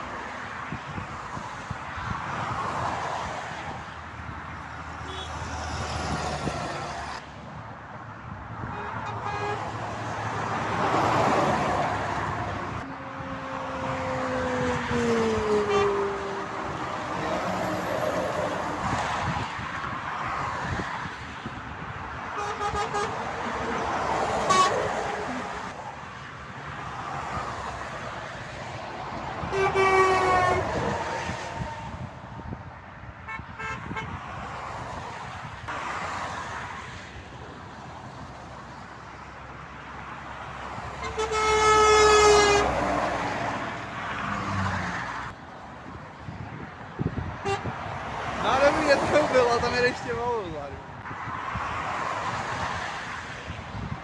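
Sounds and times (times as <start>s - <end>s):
vehicles passing at speed: 0.0s - 54.0s
vehicle horns: 5.0s - 5.7s, 8.6s - 9.8s, 15.4s - 16.4s, 22.3s - 25.5s, 29.4s - 32.0s, 33.2s - 34.2s, 41.0s - 43.2s, 47.4s - 47.8s.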